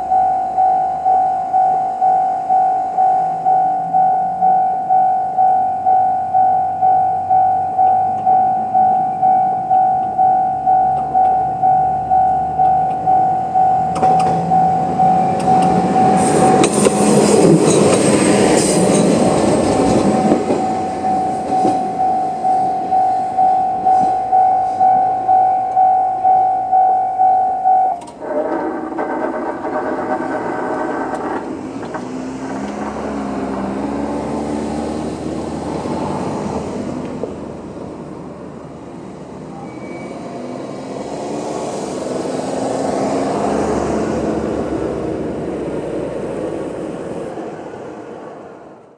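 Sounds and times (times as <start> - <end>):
level crossing electronic bell: 0.0 - 16.7, 19.6 - 28.0
diesel railcar passing: 0.0 - 48.9
low engine sound: 0.0 - 48.9.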